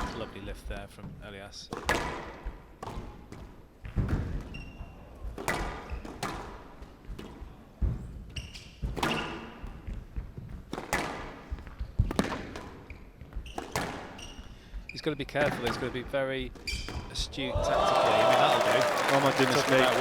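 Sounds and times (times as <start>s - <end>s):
squash ball hitting rackets and walls: 1.7s - 14.6s
shoes squeaking on court floor: 3.9s - 5.2s, 7.0s - 15.9s, 16.6s - 17.2s.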